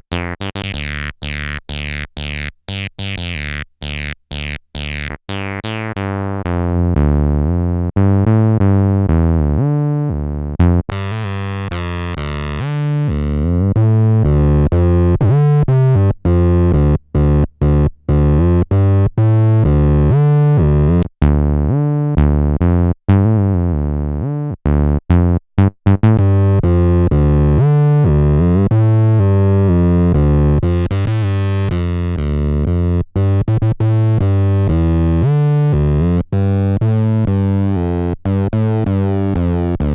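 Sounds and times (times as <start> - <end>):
distorted acid synth bassline: 0.1 - 6.1.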